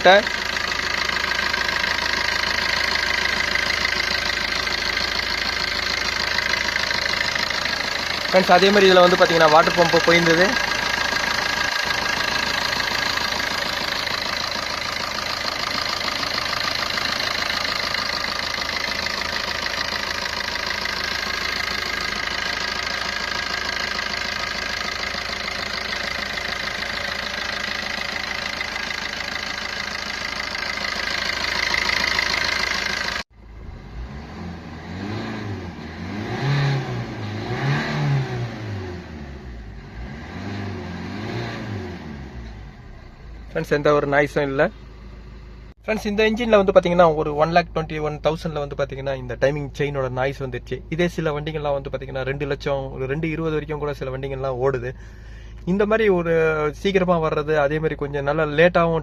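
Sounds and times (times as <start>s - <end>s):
engine revving: 0.0s - 43.8s
car engine running: 0.0s - 59.0s.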